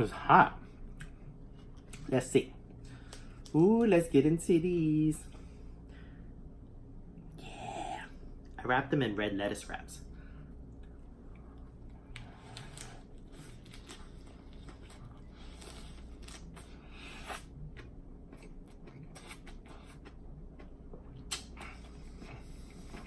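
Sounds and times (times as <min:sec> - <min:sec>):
chewing and lip smacking: 0:10.7 - 0:23.0.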